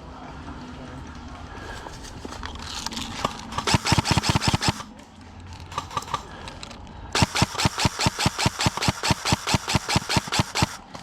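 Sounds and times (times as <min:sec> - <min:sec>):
airsoft gun firing full auto: 0:03.5 - 0:04.9, 0:07.1 - 0:11.0.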